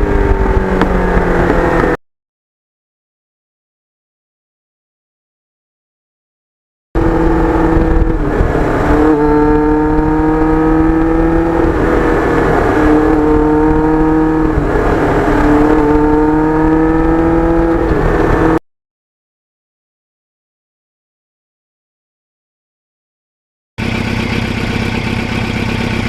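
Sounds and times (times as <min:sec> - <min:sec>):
motorcycle engine revving: 0:00.0 - 0:02.0, 0:07.0 - 0:18.6, 0:23.8 - 0:26.0.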